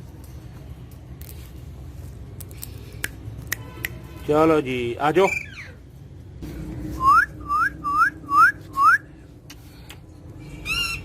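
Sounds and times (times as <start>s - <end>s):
multi-tone whistled call: 7.0s - 9.1s.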